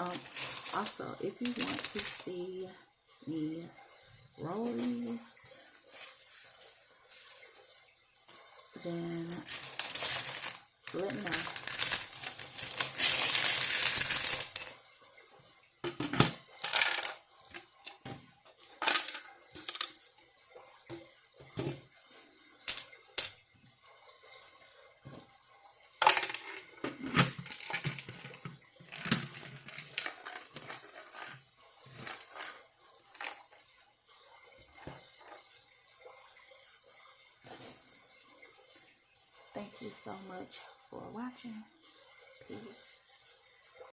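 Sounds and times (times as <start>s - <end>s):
coins clinking: 0.0s - 2.4s, 9.1s - 14.8s, 16.0s - 17.2s, 18.6s - 20.0s.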